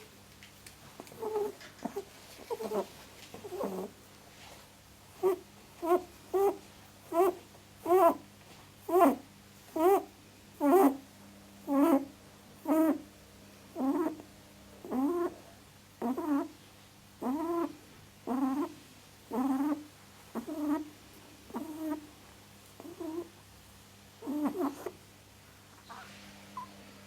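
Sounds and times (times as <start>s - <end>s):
small animal crying: 1.1s - 3.9s, 5.2s - 8.2s, 8.9s - 9.2s, 9.8s - 11.0s, 11.7s - 13.0s, 13.8s - 14.2s, 14.8s - 15.4s, 16.0s - 16.5s, 17.2s - 20.9s, 21.5s - 22.1s, 22.8s - 23.3s, 24.2s - 25.0s.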